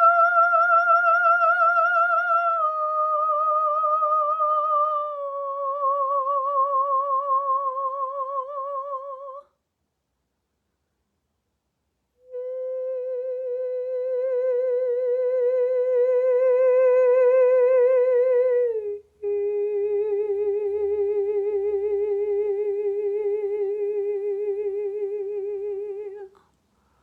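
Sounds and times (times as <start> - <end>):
woman breathing: 26.3 - 27.0.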